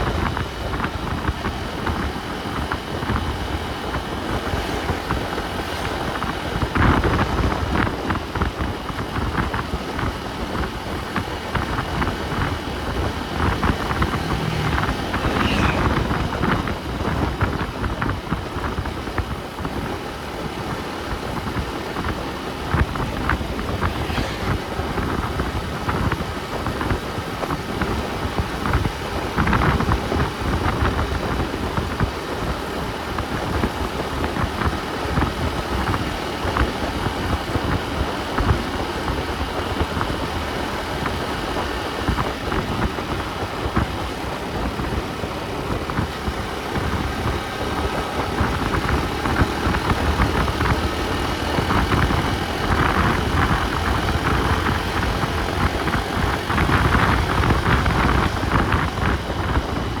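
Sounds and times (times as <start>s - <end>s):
vehicle engine and road noise: 0.0s - 60.0s.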